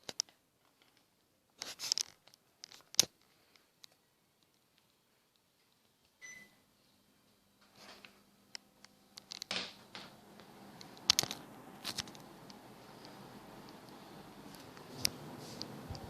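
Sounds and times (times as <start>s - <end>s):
air conditioner humming: 3.2s - 16.0s
air conditioner beep: 6.2s - 6.7s.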